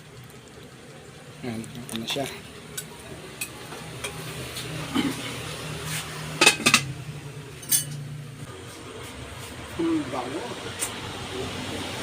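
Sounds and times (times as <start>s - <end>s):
cutlery clinking against dishes: 6.4s - 6.9s, 7.6s - 8.1s.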